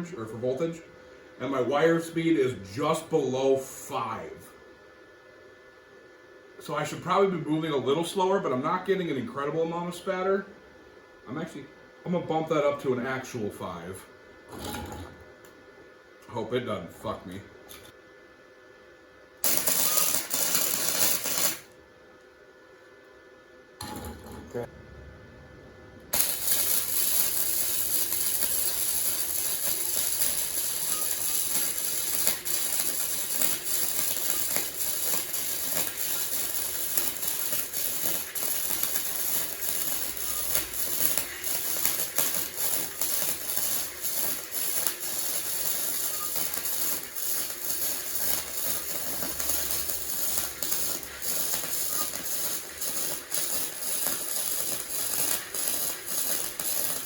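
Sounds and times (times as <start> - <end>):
welding arc crackling: 19.4 - 21.8, 26.1 - 57.0.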